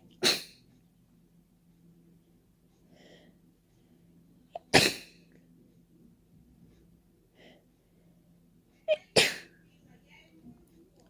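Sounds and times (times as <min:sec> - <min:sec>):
breath: 0:02.8 - 0:04.1.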